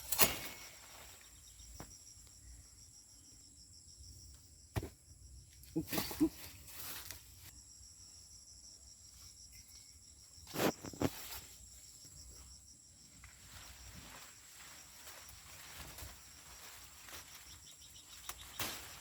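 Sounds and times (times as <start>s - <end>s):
crickets and insects chirring: 0.0s - 19.0s
rustles of handled vines: 5.8s - 7.5s, 13.0s - 19.0s.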